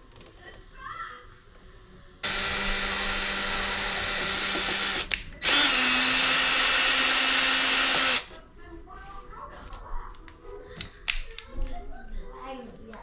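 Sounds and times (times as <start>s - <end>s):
power drill whirring: 2.2s - 8.3s.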